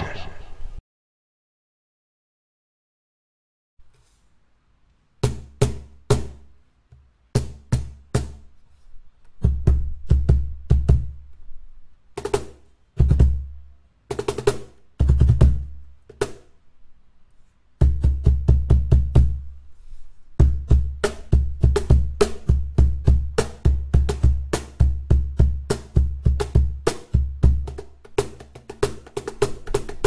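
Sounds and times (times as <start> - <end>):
cajon played by hand: 7.4 - 8.4, 12.2 - 16.4, 17.8 - 19.4, 20.4 - 30.0.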